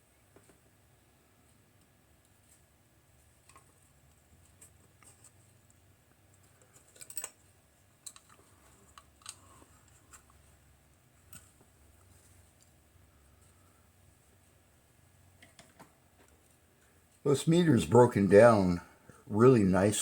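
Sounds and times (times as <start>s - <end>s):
small hard parts clicking: 8.0s - 10.3s.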